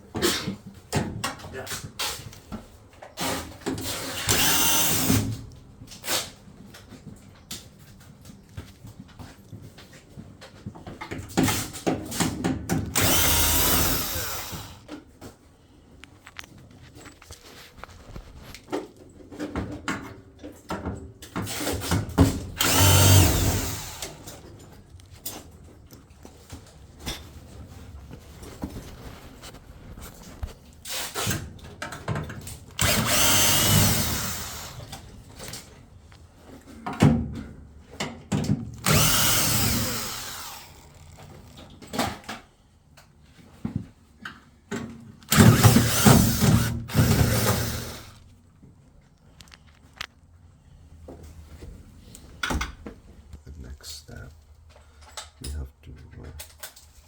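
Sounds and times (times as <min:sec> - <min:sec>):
power drill running: 0:03.2 - 0:05.4, 0:12.9 - 0:14.8, 0:22.2 - 0:24.4, 0:32.8 - 0:35.0, 0:38.8 - 0:41.7, 0:45.3 - 0:48.2.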